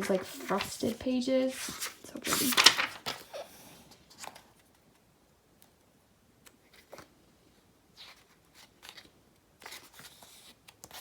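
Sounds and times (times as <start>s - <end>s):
book pages rustling: 0.0s - 5.1s, 6.5s - 7.1s, 7.9s - 11.0s.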